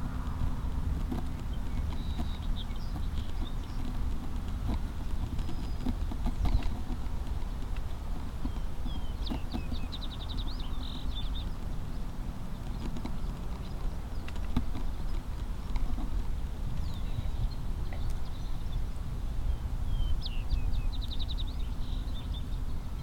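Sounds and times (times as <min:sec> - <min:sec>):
rustles and soft knocks: 0:00.0 - 0:11.0, 0:12.5 - 0:18.2
songbird trill: 0:00.0 - 0:23.0
wind rumbling on microphone: 0:00.0 - 0:23.0.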